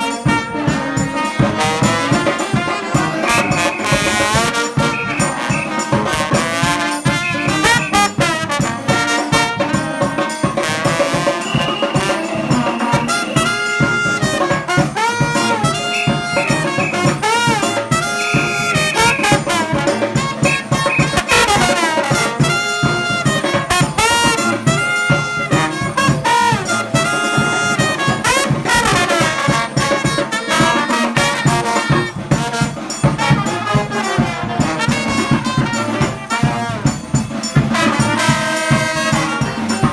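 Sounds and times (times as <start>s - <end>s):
brass band playing: 0.0s - 39.9s.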